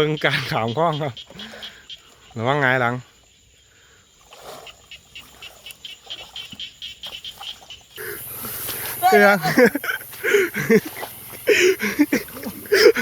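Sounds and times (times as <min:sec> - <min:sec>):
frogs calling: 0:00.0 - 0:13.0
hissing noise: 0:08.0 - 0:13.0.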